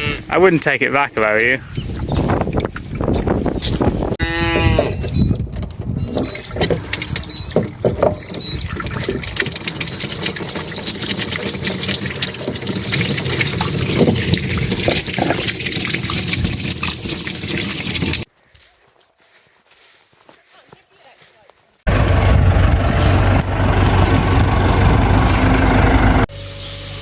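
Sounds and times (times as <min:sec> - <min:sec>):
running water: 0:06.5 - 0:18.3.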